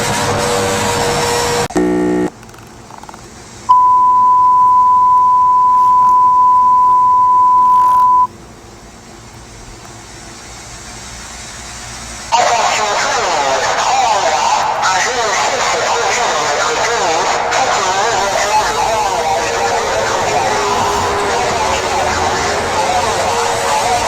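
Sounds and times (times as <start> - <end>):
low hiss: 2.4 - 24.0
steady alert beep: 3.7 - 8.3.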